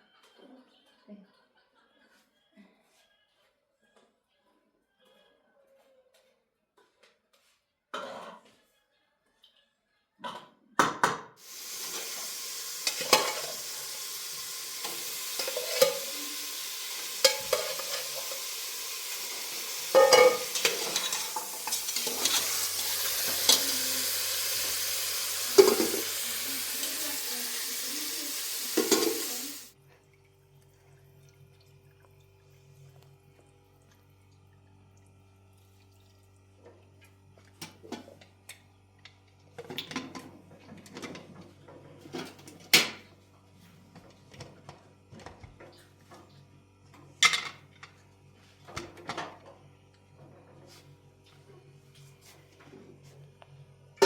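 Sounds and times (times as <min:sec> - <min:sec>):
steady hiss from pot: 0:11.4 - 0:29.8
utensil clinking in pot: 0:11.6 - 0:26.3.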